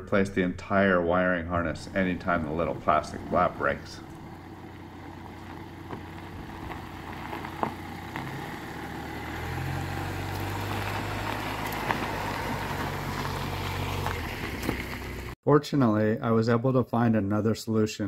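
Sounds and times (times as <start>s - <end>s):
car engine running: 1.6s - 15.4s.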